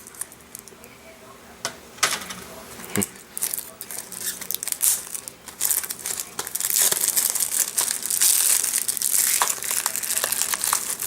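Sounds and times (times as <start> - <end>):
plastic wrap crinkling: 2.8 - 11.0.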